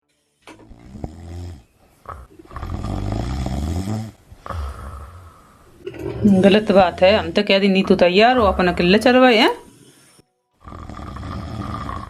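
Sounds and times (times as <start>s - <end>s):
man snoring: 0.6s - 5.9s, 9.6s - 12.0s.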